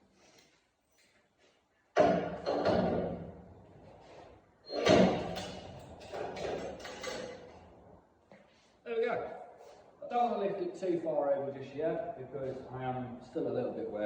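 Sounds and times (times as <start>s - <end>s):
loud metal clanks: 4.7s - 7.7s
metal creaking: 4.7s - 7.8s.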